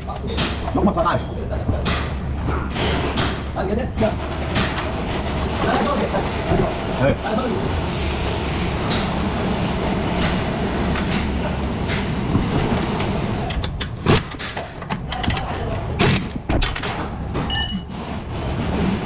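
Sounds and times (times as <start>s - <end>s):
metallic knocks and clinks: 17.5s - 17.9s.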